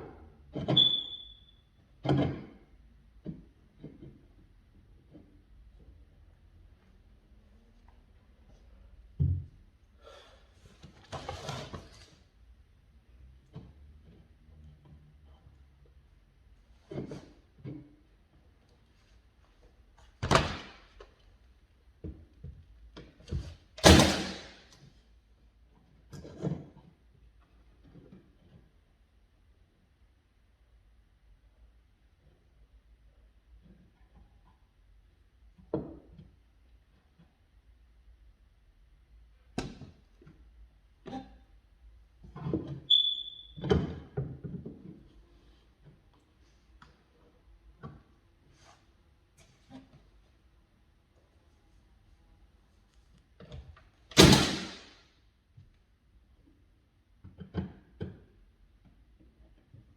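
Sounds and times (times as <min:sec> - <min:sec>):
sharp knocks and bangs: 0:54.2 - 0:55.0.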